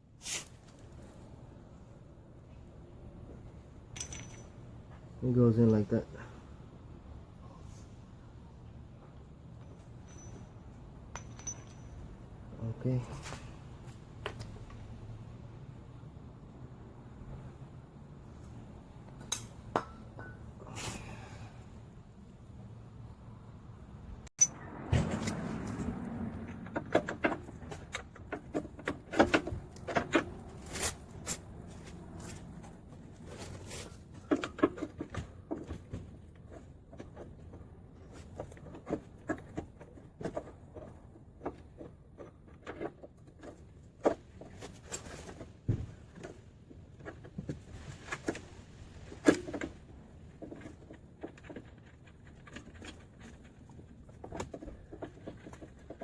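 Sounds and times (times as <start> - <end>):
hand tools clinking: 3.9 - 4.6, 9.7 - 12.1.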